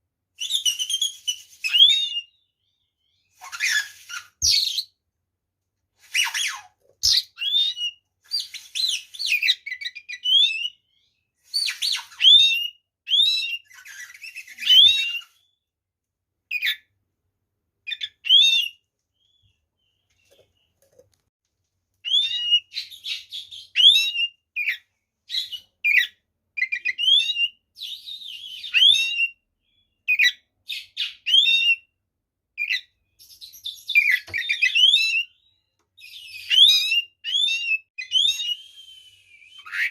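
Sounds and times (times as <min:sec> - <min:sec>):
bird singing whistled notes: 0:07.0 - 0:15.6, 0:22.1 - 0:31.9, 0:32.6 - 0:39.9.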